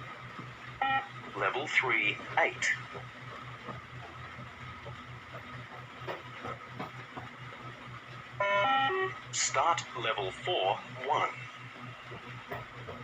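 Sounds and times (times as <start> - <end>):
low rapid pulsing hum: 0.0 - 13.0.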